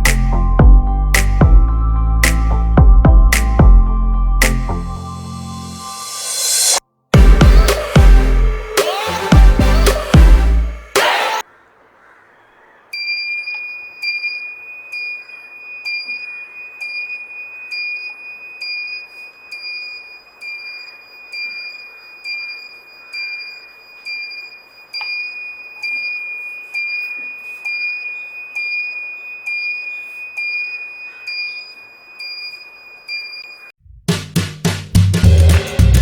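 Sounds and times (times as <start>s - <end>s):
background music: 0.0s - 11.4s, 34.2s - 36.0s
pulsing high electronic tone: 4.4s - 11.4s.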